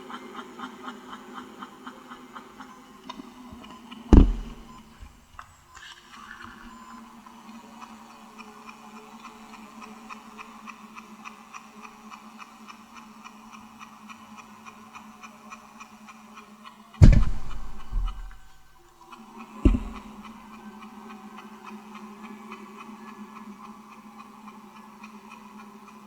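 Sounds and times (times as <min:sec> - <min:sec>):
tape hum: 0:03.6 - 0:05.5, 0:17.0 - 0:18.7, 0:19.7 - 0:20.1.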